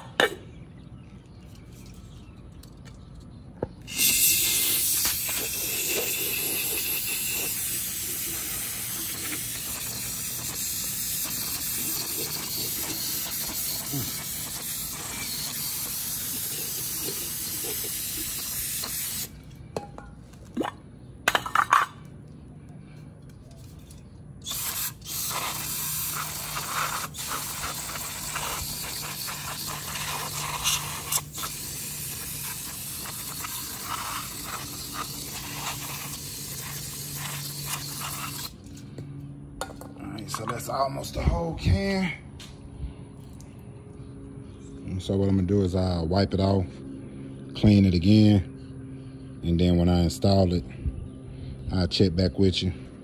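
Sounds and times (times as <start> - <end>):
aerosol spray can hissing: 3.9 - 19.3, 24.4 - 38.6.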